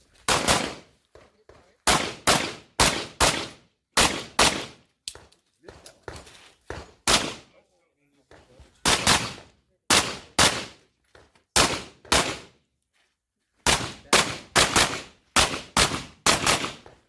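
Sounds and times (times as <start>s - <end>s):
pistol shots in quick pairs: 0.3s - 0.9s, 1.8s - 4.8s, 7.0s - 7.5s, 8.8s - 10.8s, 11.6s - 12.5s, 13.6s - 16.9s.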